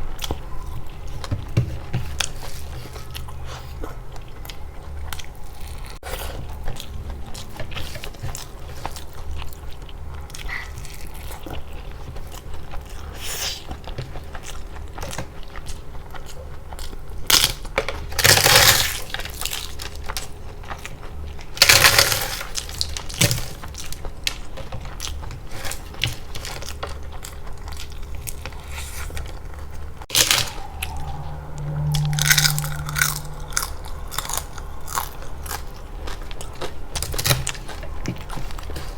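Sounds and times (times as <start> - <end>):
chewing and crunching: 0.0 - 30.3.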